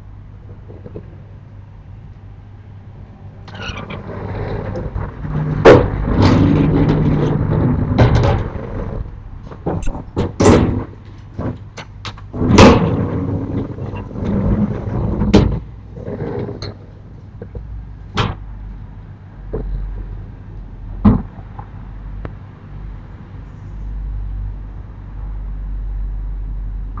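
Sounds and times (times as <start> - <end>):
low steady rumble: 0.0 - 27.0
sliding shutters rattling: 3.5 - 16.8.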